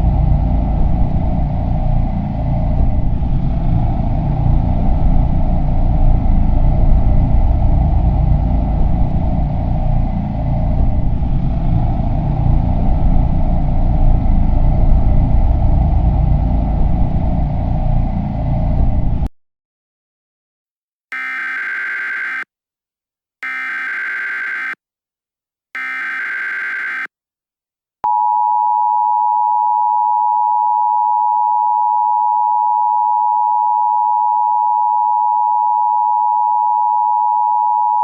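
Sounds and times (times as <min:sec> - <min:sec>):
loud low rumble: 0:00.0 - 0:19.3.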